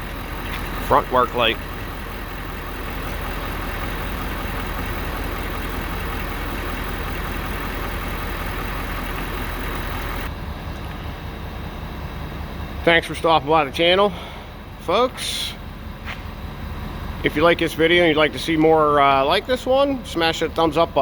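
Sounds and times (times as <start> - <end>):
truck engine idling: 0.0 - 21.0.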